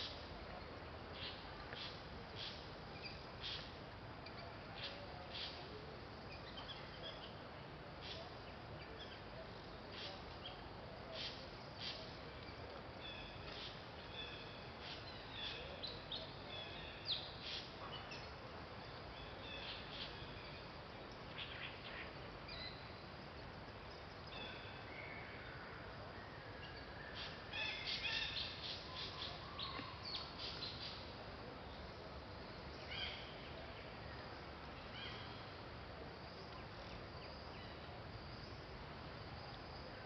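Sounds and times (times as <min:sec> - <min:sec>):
steady background hiss: 0:00.0 - 0:40.0.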